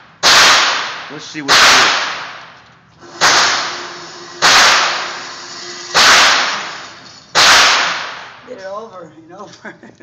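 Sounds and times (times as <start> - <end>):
pistol shots echoing: 0.2 - 2.6, 5.9 - 6.7, 7.3 - 8.3.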